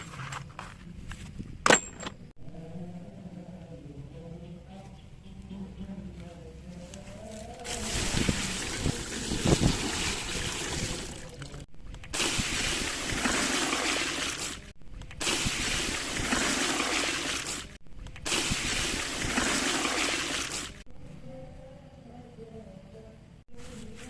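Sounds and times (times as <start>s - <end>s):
water splashing over plastic toy: 7.6s - 20.8s.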